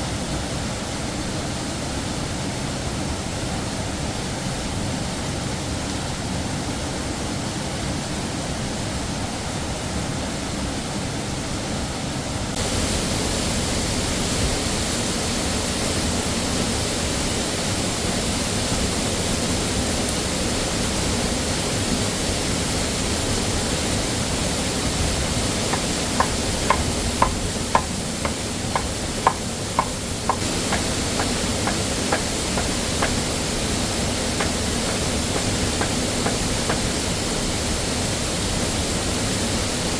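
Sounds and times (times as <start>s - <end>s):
waterfall rushing: 12.4s - 39.9s
light sharp taps: 25.7s - 33.2s.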